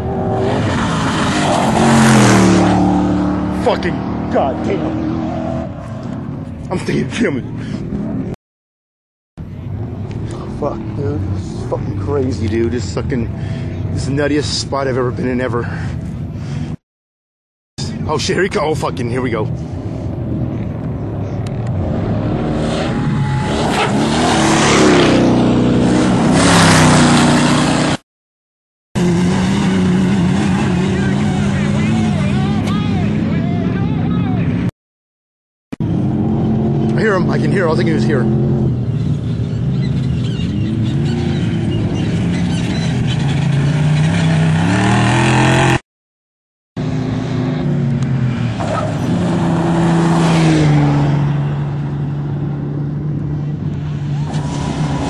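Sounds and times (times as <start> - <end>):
race vehicle engine passing: 0.0 - 6.4, 29.0 - 34.6, 46.8 - 55.0
race vehicle engine at full throttle: 0.0 - 8.4, 9.4 - 16.8, 17.8 - 28.0, 29.0 - 34.7, 35.8 - 45.8, 46.8 - 55.0.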